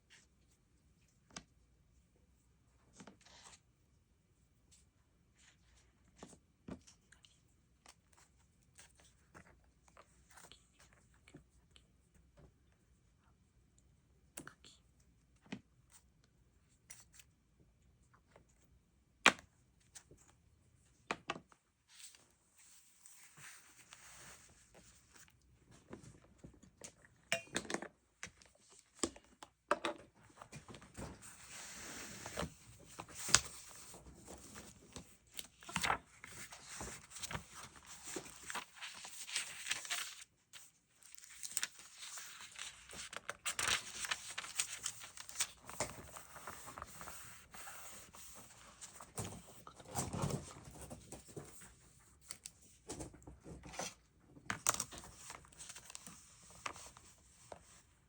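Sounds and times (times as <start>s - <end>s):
paper rustling: 30.4s - 51.7s, 52.3s - 57.8s.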